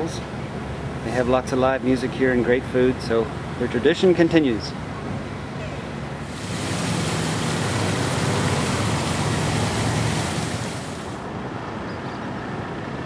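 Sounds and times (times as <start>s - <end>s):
low hum of traffic: 0.0s - 13.0s
vehicle passing on road: 6.2s - 11.3s.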